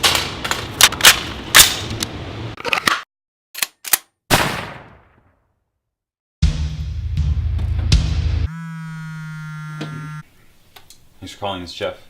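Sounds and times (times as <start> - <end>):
rifle gunshots: 4.3 - 5.1.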